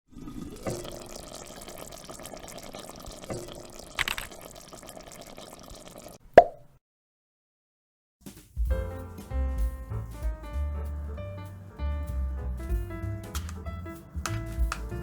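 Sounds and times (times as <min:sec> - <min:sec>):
water running: 0:00.1 - 0:06.2, 0:12.5 - 0:15.0.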